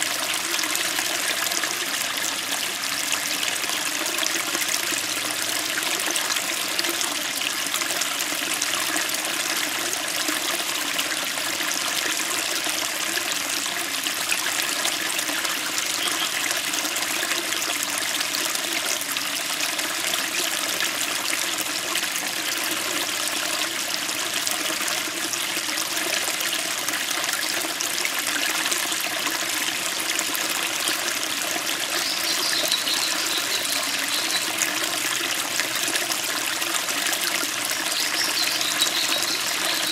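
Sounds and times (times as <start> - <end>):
stream running over stones: 0.0 - 39.9.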